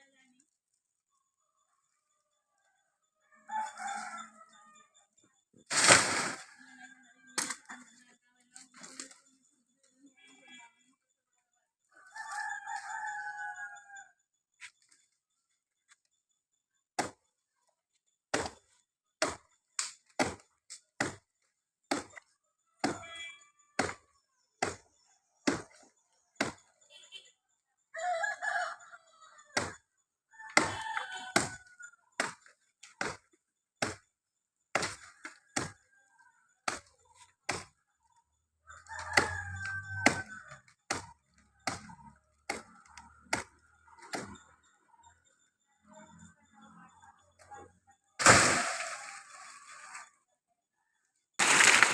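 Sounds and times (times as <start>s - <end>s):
rooster crowing: 12.0s - 14.1s, 27.9s - 31.9s, 38.7s - 40.7s
chopping strikes on palm trunk: 19.2s - 20.4s, 23.8s - 24.0s, 29.6s - 29.8s, 34.8s - 35.8s.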